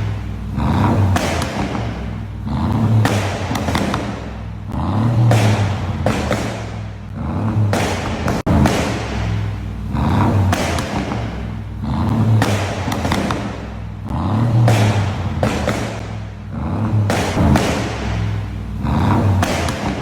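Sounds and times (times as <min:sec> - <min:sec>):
car engine revving: 0:00.0 - 0:20.0
exhaust pops and crackles: 0:00.0 - 0:20.0.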